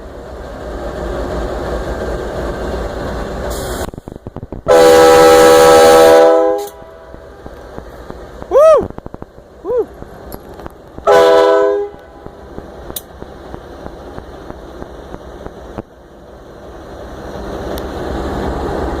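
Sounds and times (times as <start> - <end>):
locomotive air horn blast: 4.7 - 7.1, 11.1 - 12.2.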